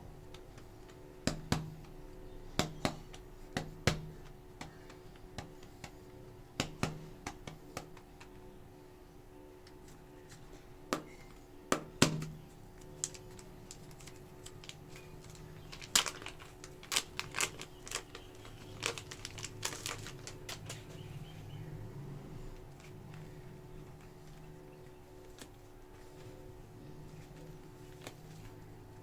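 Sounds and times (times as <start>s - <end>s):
plastic packaging clicks and crinkles: 9.6s - 21.1s, 22.6s - 26.3s, 27.0s - 29.0s.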